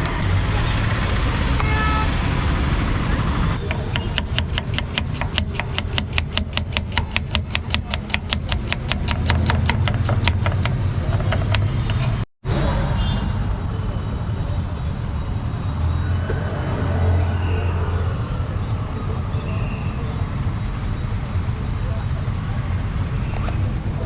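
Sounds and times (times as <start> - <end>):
street traffic noise: 0.0 - 24.0
utensil tapping on hard surface: 3.6 - 12.1.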